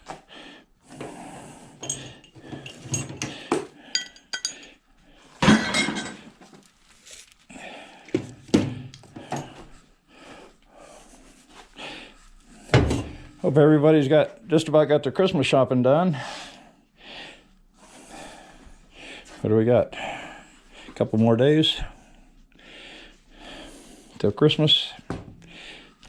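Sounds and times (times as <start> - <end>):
metal parts clanking: 4.0 - 4.8.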